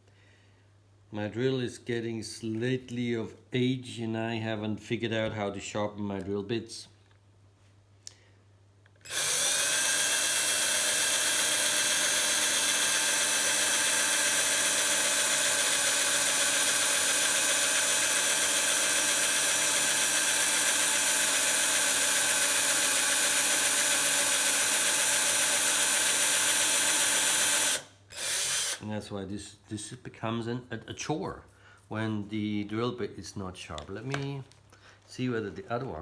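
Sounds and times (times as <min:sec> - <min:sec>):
electric drill boring metal: 0:09.0 - 0:28.8.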